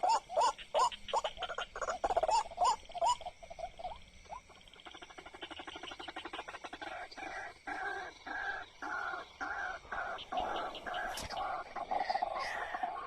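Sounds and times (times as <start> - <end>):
waterhen calling: 8.0 - 13.0.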